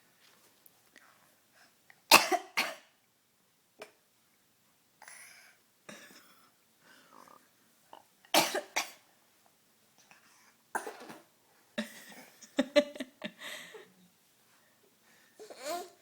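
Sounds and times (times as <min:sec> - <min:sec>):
baby imitation coughs: 0:02.1 - 0:02.9, 0:08.4 - 0:09.0, 0:10.8 - 0:11.2.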